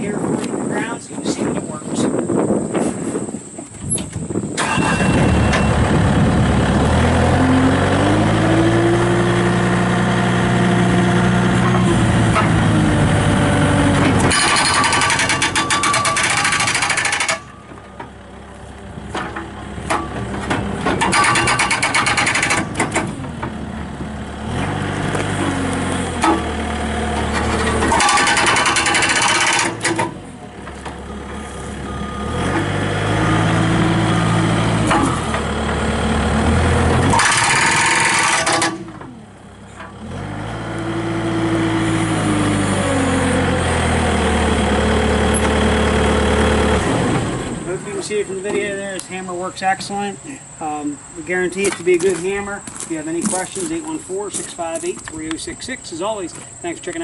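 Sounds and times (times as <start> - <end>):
diesel engine starting and revving: 3.4 - 57.0
hydraulic breaker hammer pounding: 14.0 - 18.2, 19.1 - 23.6, 25.2 - 30.2, 36.9 - 39.2.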